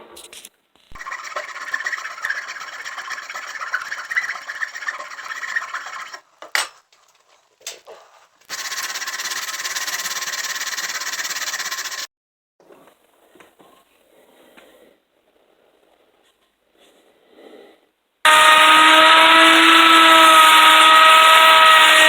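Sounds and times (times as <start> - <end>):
wood lathe scraping: 0.9 - 6.4, 8.5 - 12.1, 18.3 - 22.0.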